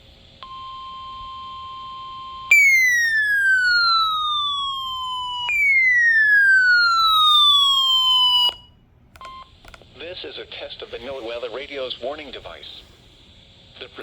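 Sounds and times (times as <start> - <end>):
steady alarm tone: 0.4 - 8.7
falling siren-like alert tone: 2.5 - 8.6.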